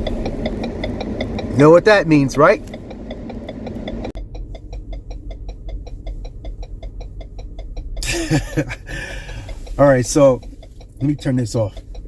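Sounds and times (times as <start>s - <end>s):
car engine idling: 0.0s - 12.0s
turn signal ticking rapidly: 0.0s - 12.0s.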